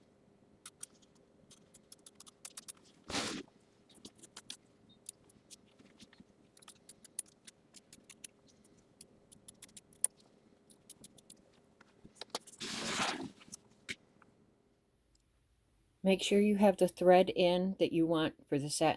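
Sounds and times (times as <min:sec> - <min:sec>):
scissors snipping fabric: 0:00.6 - 0:08.4, 0:09.3 - 0:11.4
fabric rustling: 0:02.4 - 0:07.7, 0:11.4 - 0:14.0.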